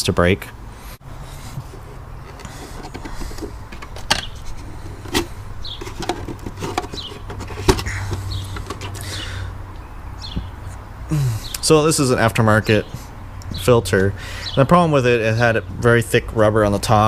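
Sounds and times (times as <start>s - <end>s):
plastic clicks and knocks: 5.1s - 9.0s.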